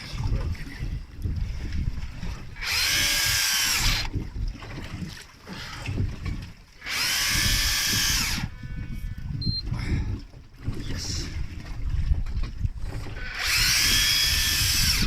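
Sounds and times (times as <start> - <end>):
boat rumble: 0.0 - 15.0
wind: 0.0 - 15.0
electric fishing reel whining: 2.6 - 4.2, 6.8 - 9.2, 13.0 - 15.0.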